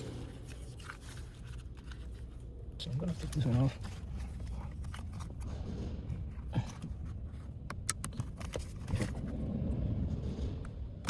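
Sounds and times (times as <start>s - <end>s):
low rumble: 8.6s - 11.0s.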